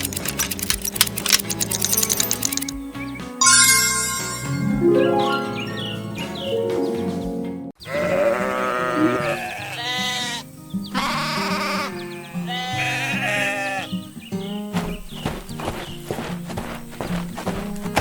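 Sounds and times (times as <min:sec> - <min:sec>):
background music: 0:00.0 - 0:07.8
farm animal bleating: 0:07.8 - 0:14.2.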